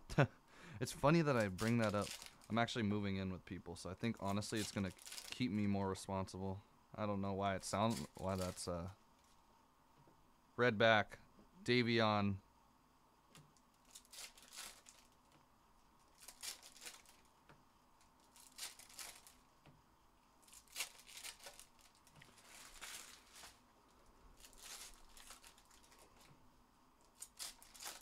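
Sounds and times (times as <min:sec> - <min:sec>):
cards and foil wrappers crinkling: 0:00.8 - 0:02.8, 0:03.9 - 0:05.7, 0:07.6 - 0:08.9, 0:13.7 - 0:15.3, 0:16.0 - 0:17.4, 0:18.0 - 0:19.5, 0:20.4 - 0:26.4, 0:27.0 - 0:28.0.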